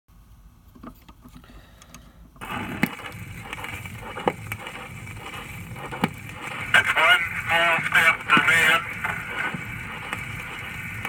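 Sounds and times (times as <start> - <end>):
radio static hiss: 2.4 - 11.0
vinyl record crackle and clicks: 2.4 - 11.0.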